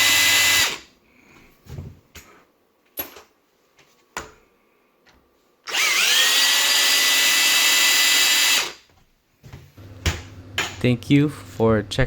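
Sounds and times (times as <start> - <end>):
power drill spinning: 0.0 - 0.9, 5.6 - 8.9.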